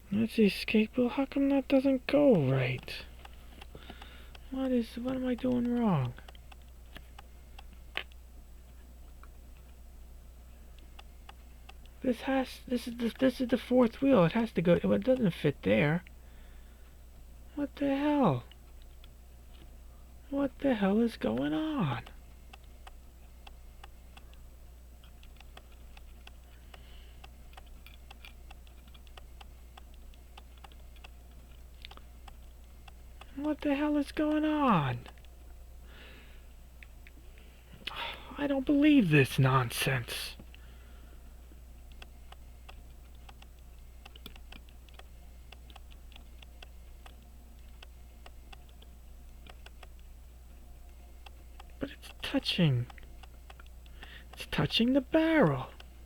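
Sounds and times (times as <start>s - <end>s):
low steady hum: 0.0s - 56.0s
tweezers clicking on small parts: 25.0s - 33.3s, 41.9s - 50.1s, 52.8s - 54.5s.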